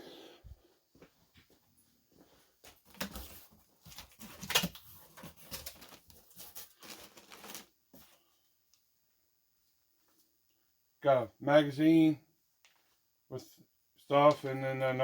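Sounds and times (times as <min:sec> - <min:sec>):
cardboard and paper rustling: 0:02.7 - 0:08.3.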